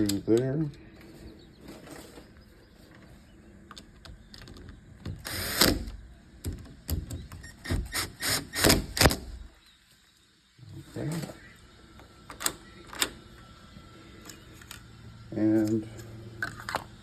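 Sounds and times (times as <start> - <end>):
sharp clicks and knocks: 3.7 - 9.3
screws scraping: 7.4 - 9.2.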